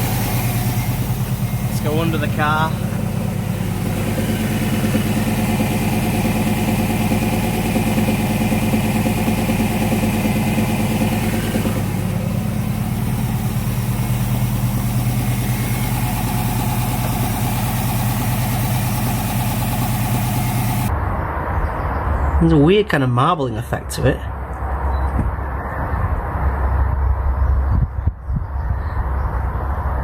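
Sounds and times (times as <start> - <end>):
car engine idling with a knock: 0.0 - 20.9.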